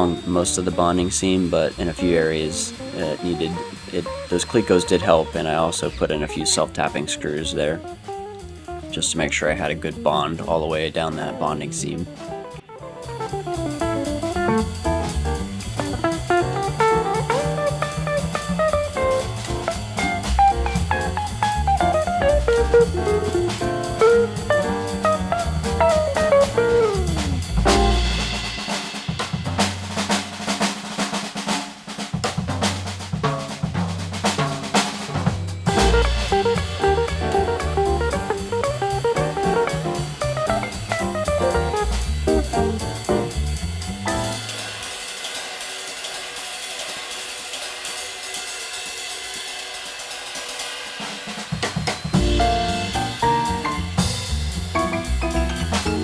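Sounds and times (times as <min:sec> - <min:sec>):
background music with drum beat: 0:00.0 - 0:56.0.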